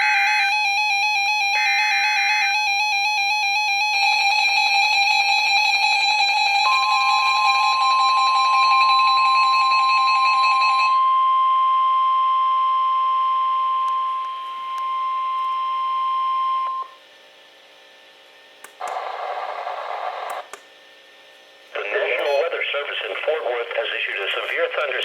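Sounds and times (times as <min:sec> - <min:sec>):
steady alarm tone: 0:00.0 - 0:17.0.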